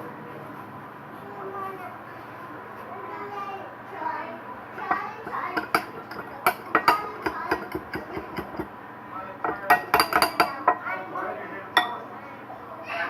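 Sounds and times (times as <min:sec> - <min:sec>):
dishes and utensils clinking: 0:04.8 - 0:08.7, 0:09.4 - 0:10.9, 0:11.8 - 0:12.1.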